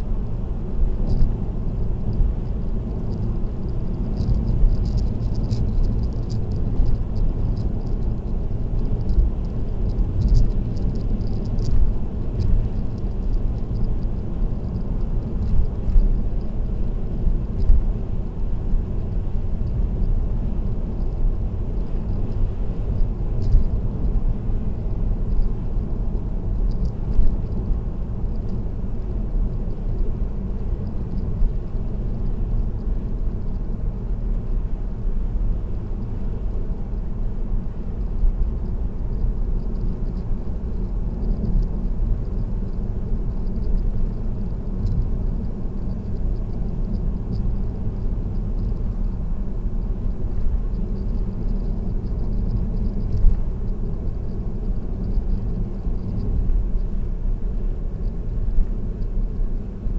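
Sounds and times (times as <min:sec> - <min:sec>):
car road rumble: 0:00.0 - 0:59.9
faint light ticks: 0:01.0 - 0:01.3, 0:03.0 - 0:16.5, 0:21.0 - 0:24.3, 0:26.5 - 0:28.7, 0:38.0 - 0:49.2, 0:49.8 - 0:56.9.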